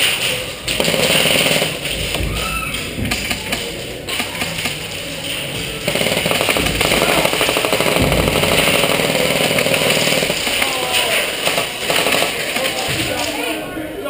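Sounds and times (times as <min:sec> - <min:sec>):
airsoft gun full-auto burst: 0:00.7 - 0:02.2, 0:05.8 - 0:12.9.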